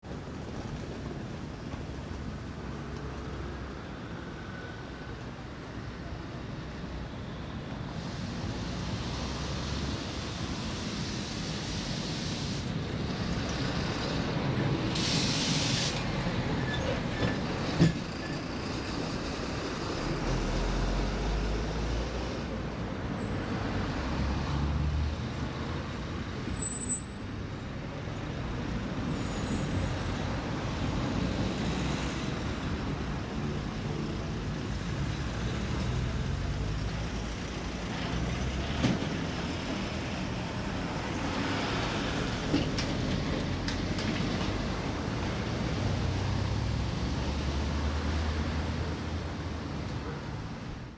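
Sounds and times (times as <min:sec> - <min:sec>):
road traffic passing: 0:00.0 - 0:50.9
brief hiss: 0:10.6 - 0:12.8, 0:14.9 - 0:16.1.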